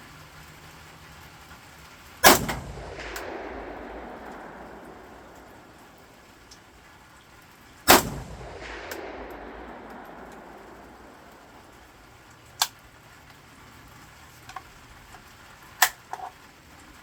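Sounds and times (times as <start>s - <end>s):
rifle shot echoing: 2.2s - 6.8s, 7.9s - 12.3s
short quiet crack: 2.3s - 6.4s, 7.9s - 12.0s.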